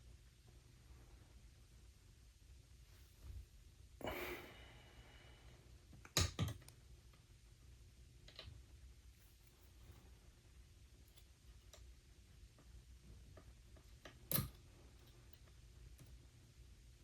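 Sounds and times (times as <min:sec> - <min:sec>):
small metal clicks: 0:14.0 - 0:16.2.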